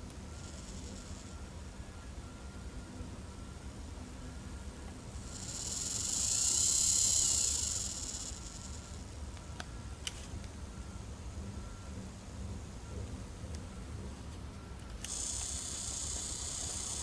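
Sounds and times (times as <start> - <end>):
high hiss: 5.2 - 9.0, 15.1 - 17.0.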